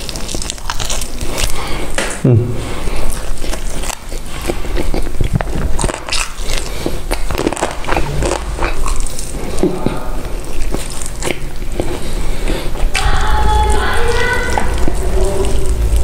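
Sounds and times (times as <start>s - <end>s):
crunchy bites of fried chicken: 0.0s - 2.1s, 3.0s - 12.2s
soft mouth sounds: 0.0s - 16.0s.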